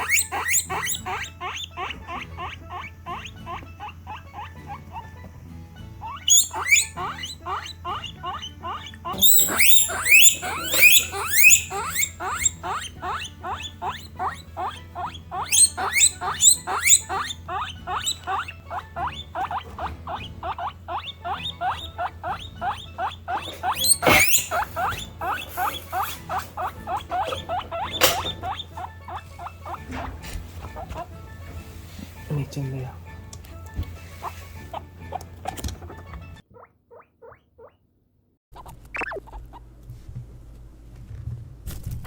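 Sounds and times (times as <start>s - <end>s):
guinea pigs wheeking: 0.0s - 37.8s, 38.6s - 39.8s.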